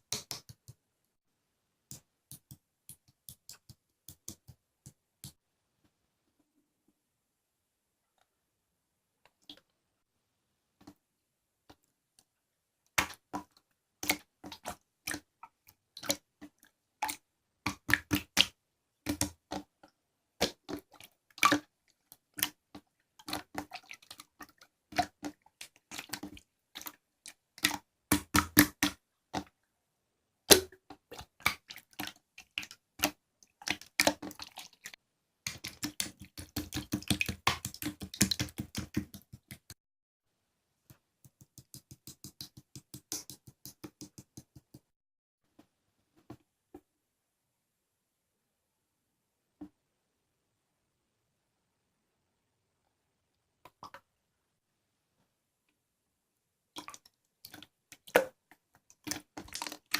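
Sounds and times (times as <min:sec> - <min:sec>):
sharp clicks and taps: 0:00.0 - 0:00.8, 0:01.9 - 0:05.4, 0:35.5 - 0:39.8, 0:40.9 - 0:44.9.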